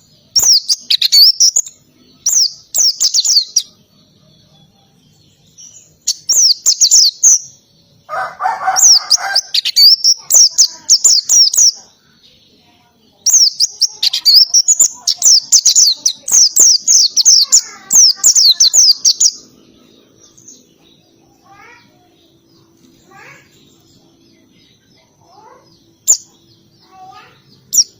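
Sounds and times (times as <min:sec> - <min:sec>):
bird singing rapid high notes: 0:13.2 - 0:24.5.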